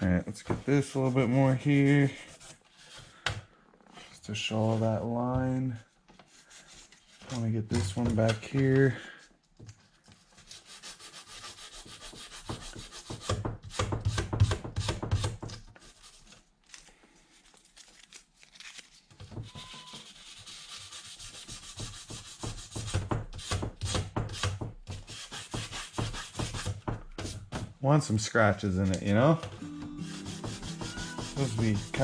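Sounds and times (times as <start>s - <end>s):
sandpaper rubbing on paint: 10.4s - 13.3s, 19.9s - 23.5s, 25.0s - 26.8s, 30.0s - 32.0s.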